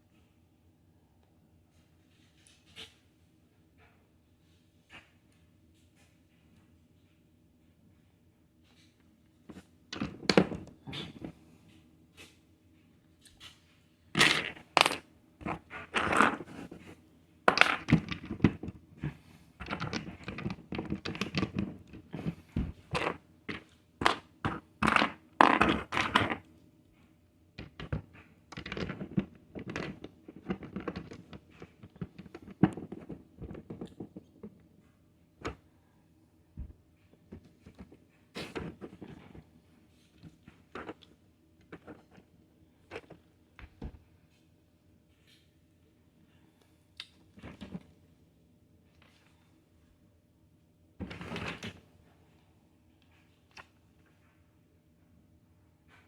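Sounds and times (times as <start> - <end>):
plastic bricks clattering: 9.9 - 11.3, 14.2 - 26.4, 27.6 - 34.5, 37.3 - 39.4, 40.2 - 42.2.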